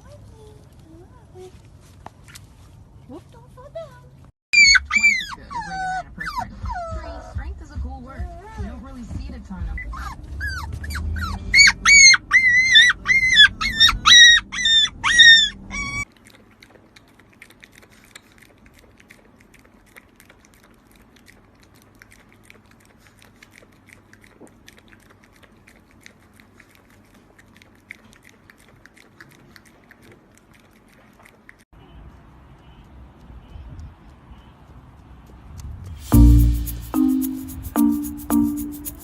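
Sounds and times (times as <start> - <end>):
puppy whining and yipping: 4.5 - 7.4, 9.7 - 16.1.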